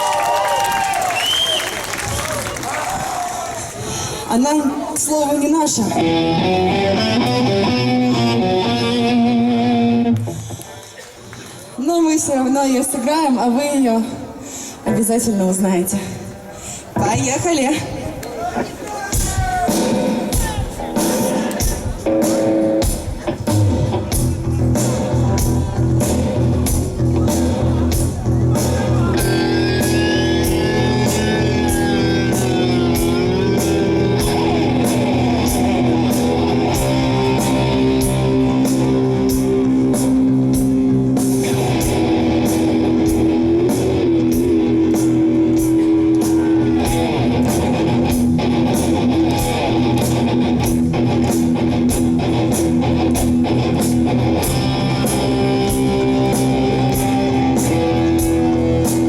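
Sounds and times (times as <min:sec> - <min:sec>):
rock band playing: 0:05.6 - 0:10.6, 0:19.1 - 0:59.0
electric guitar: 0:05.6 - 0:11.4, 0:19.3 - 0:59.0.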